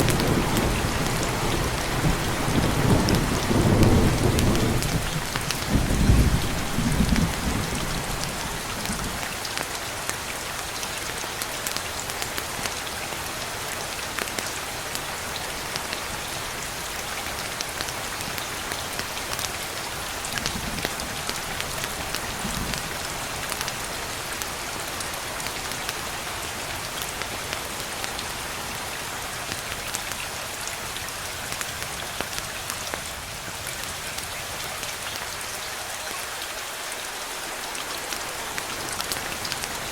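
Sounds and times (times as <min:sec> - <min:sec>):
thunder rumble: 0:00.0 - 0:09.2
rain falling: 0:00.0 - 0:39.9.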